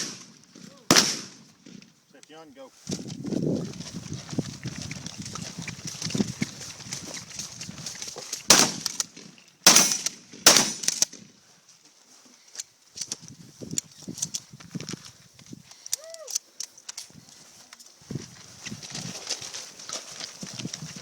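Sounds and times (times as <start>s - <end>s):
shotgun shots: 0.0s - 1.4s, 8.5s - 9.0s, 9.6s - 11.1s.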